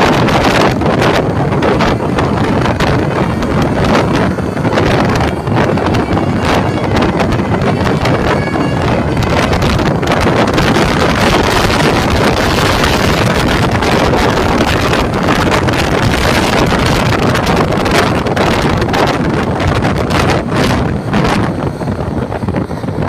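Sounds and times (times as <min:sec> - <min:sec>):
bus going by: 0:00.0 - 0:23.0
wind buffeting microphone: 0:00.0 - 0:23.0.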